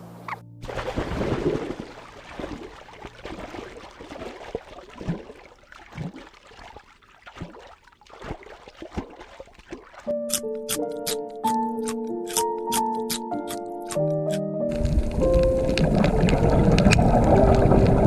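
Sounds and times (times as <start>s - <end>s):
water splashing and gurgling: 0.6s - 10.2s, 14.7s - 18.0s.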